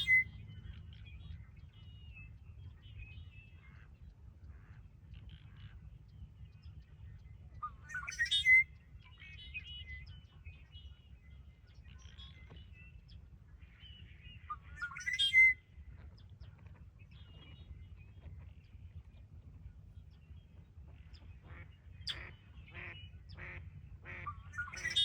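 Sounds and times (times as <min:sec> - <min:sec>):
bird chirps and calls: 0:00.0 - 0:03.6, 0:07.6 - 0:10.7, 0:13.7 - 0:15.6, 0:21.5 - 0:25.0
blackbird song with buzzy trill: 0:00.0 - 0:25.0.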